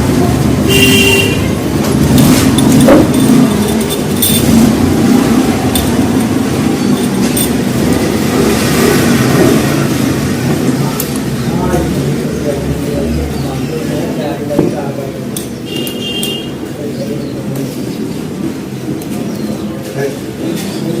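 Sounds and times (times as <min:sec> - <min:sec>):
motorcycle engine running: 0:00.0 - 0:11.5
short metallic clinks: 0:02.1 - 0:04.7.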